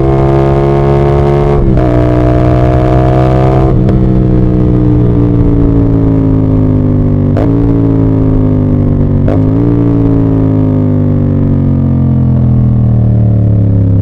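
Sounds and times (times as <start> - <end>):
motorcycle engine under load: 0.0 - 14.0.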